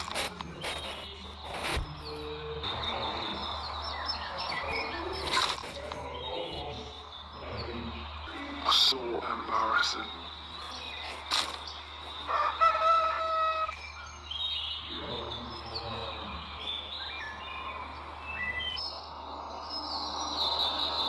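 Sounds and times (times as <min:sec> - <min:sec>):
low-pitched crow-like call: 0:12.3 - 0:13.7.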